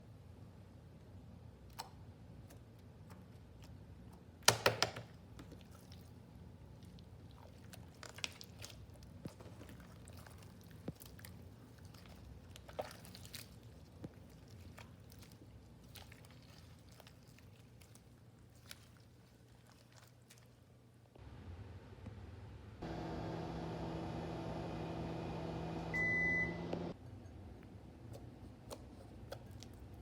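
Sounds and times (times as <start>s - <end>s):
low steady hum: 20.7s - 30.0s.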